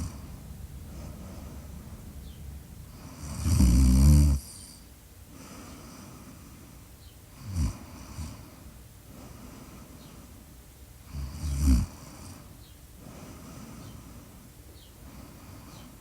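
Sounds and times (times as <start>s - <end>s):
rattling snore: 0.0s - 4.8s, 11.1s - 12.4s.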